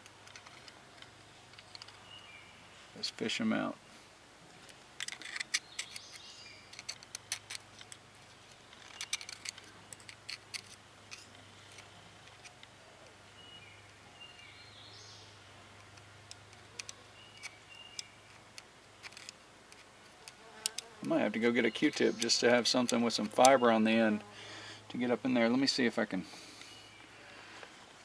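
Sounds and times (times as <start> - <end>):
metal pick clicking and scraping: 0.0 - 2.1, 4.6 - 13.2, 15.7 - 20.9, 21.9 - 23.6.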